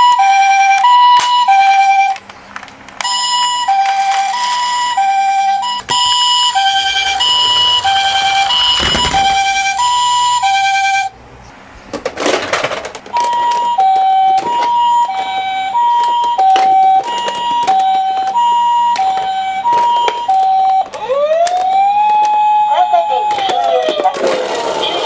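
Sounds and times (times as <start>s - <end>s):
toy siren two-tone: 0.0s - 2.2s, 3.0s - 11.1s, 13.1s - 24.4s
rising siren wail: 3.2s - 11.1s, 13.7s - 23.4s.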